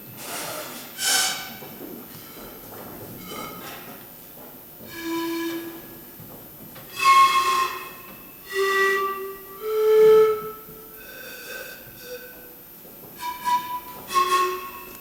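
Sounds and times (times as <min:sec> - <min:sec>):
flute-like wind instrument: 0:04.8 - 0:15.0.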